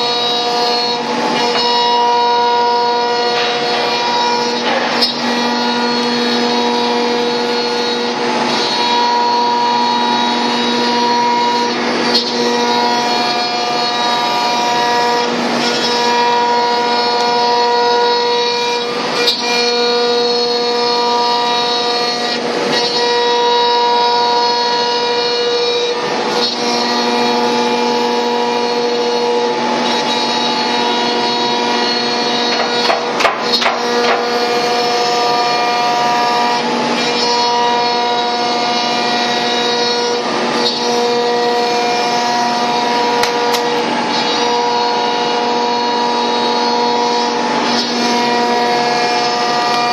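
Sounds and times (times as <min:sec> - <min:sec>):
router spindle running: 0:00.0 - 0:49.9
cutting noise rushes: 0:24.4 - 0:49.9.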